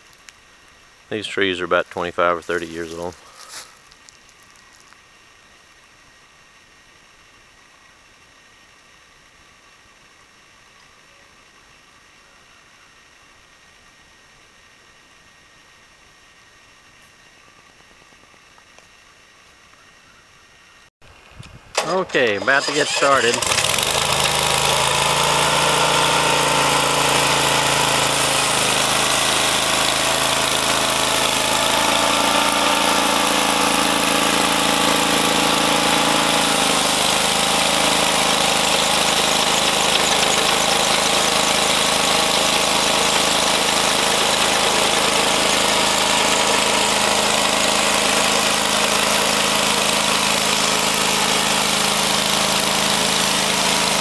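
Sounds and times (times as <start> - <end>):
sawmill gasoline engine running: 1.1 - 3.8, 21.8 - 54.0.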